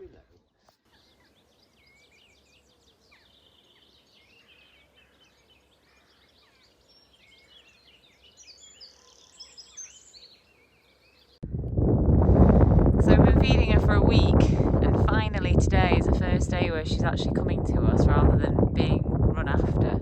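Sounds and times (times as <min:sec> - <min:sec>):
small birds chirping and trilling: 0:00.2 - 0:11.4.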